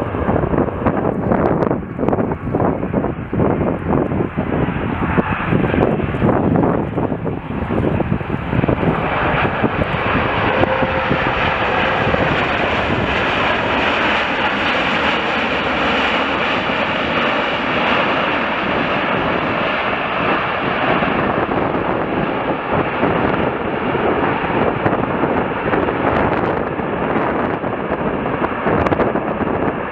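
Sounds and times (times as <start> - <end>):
heavy wind on microphone: 0.0 - 29.9
jet airliner engines: 0.0 - 29.9.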